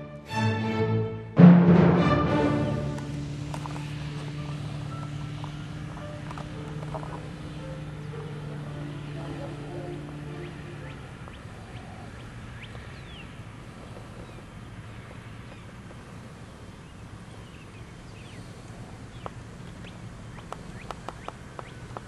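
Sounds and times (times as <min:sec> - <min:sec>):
vehicle interior hum: 0:02.6 - 0:22.0
sharp clicks: 0:20.4 - 0:22.0.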